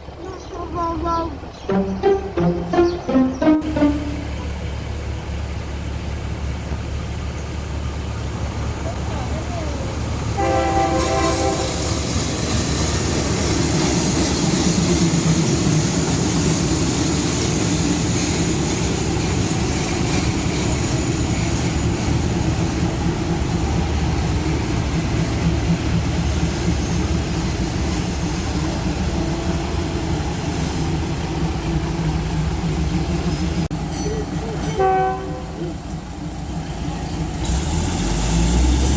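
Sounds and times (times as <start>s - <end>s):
train running: 0.0s - 38.9s
train horn blast: 1.8s - 4.6s, 10.4s - 12.1s, 34.7s - 35.7s.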